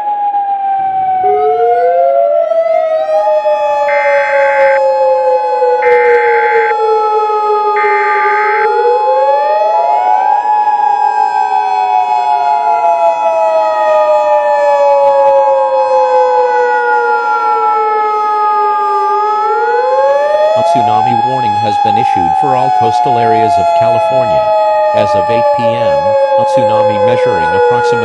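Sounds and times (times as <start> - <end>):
sirens wailing: 0.0 - 28.0
two-tone alert signal: 3.9 - 4.8, 5.8 - 6.8, 7.8 - 8.7
short buzzing pulses: 5.8 - 6.8.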